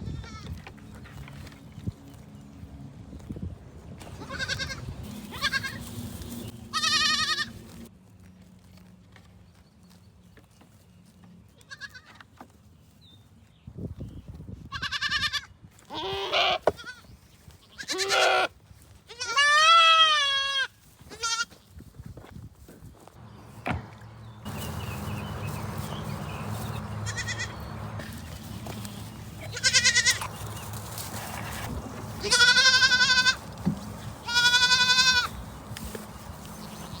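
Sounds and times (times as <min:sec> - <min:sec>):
goats bleating: 0:04.0 - 0:05.9, 0:06.7 - 0:07.7, 0:11.7 - 0:12.1, 0:14.7 - 0:17.0, 0:17.6 - 0:18.5, 0:19.1 - 0:21.6, 0:26.3 - 0:28.3, 0:29.2 - 0:33.6, 0:34.2 - 0:35.4.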